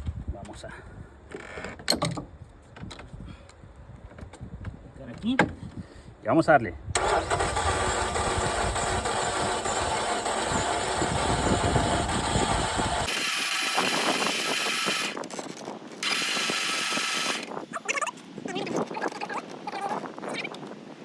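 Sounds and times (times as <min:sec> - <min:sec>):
engine cranking on starter: 0:07.0 - 0:15.2.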